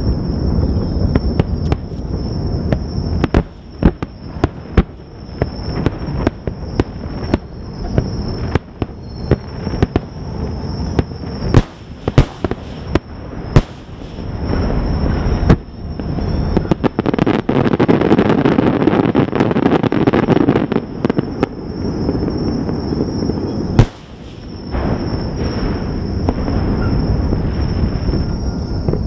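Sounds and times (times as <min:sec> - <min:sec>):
fireworks bursting: 0:00.7 - 0:29.0.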